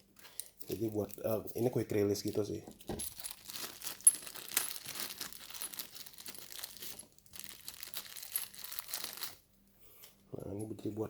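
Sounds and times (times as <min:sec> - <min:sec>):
plastic packaging crinkling: 0:00.6 - 0:09.4.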